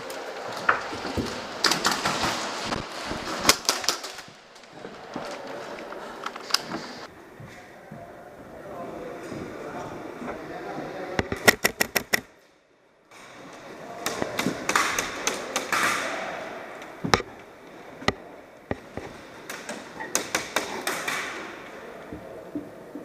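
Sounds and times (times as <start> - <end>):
rustling noise: 0.0 - 7.7.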